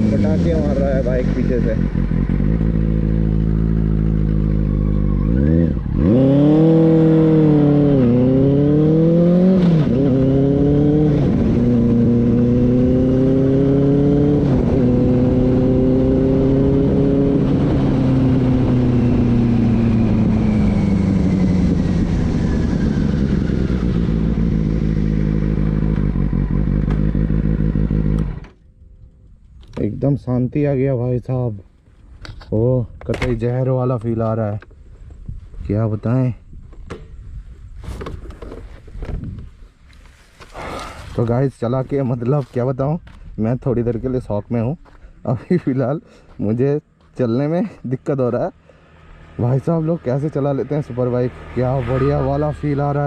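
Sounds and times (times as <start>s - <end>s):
motorcycle engine revving: 0.0s - 28.6s, 48.3s - 53.0s.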